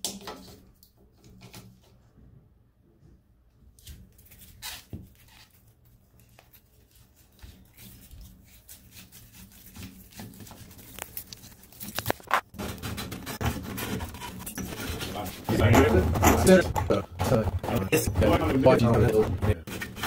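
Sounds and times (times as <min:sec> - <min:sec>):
sharp knocks: 0:12.6 - 0:20.0.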